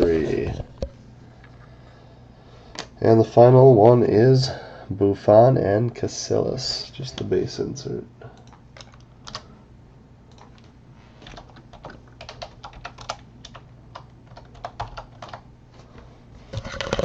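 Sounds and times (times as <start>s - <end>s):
faint steady hum: 0.0s - 17.0s
computer keyboard typing: 8.4s - 9.5s, 10.3s - 15.4s.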